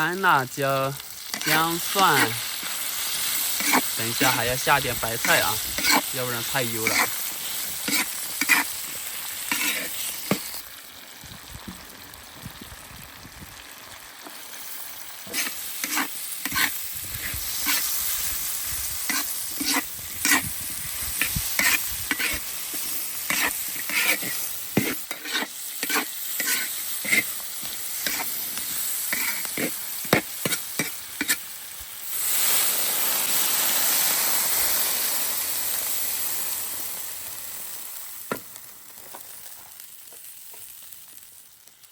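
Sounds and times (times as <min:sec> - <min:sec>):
pork sizzling in a wok: 0:00.0 - 0:41.9
metal spatula scraping a wok: 0:01.3 - 0:10.6, 0:15.2 - 0:31.5.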